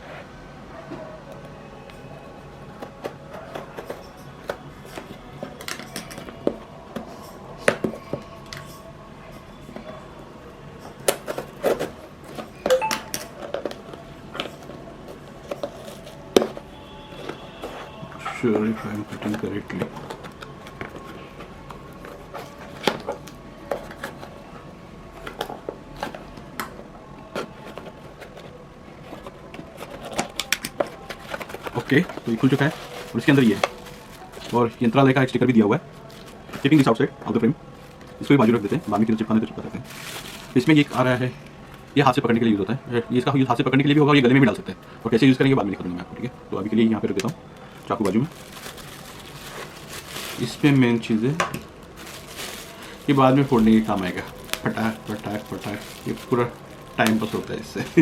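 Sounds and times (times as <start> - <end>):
knife cutting packaging: 27.3 - 34.8, 48.2 - 58.0.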